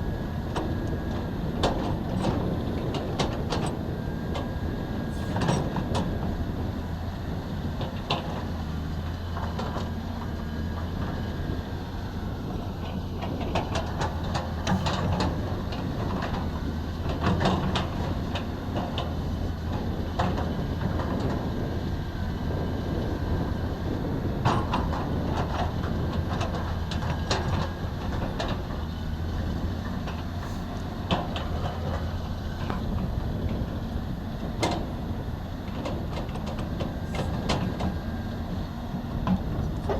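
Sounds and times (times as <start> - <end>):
excavator engine running: 0.0 - 39.9
machine clanks and knocks: 5.1 - 6.1, 35.7 - 38.0.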